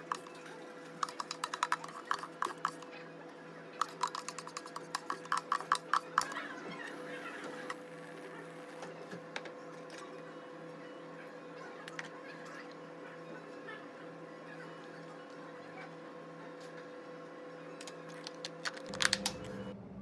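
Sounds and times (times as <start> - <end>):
steady machine hum: 18.8 - 20.0.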